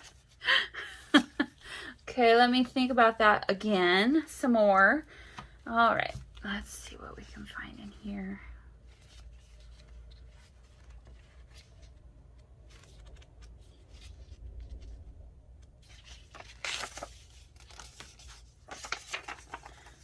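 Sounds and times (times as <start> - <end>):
paper rustling and shuffling: 0.0 - 0.4, 4.6 - 20.0.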